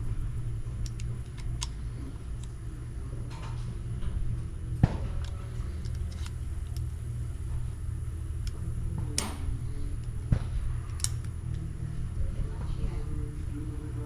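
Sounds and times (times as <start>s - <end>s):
car cabin rumble: 4.8s - 10.0s.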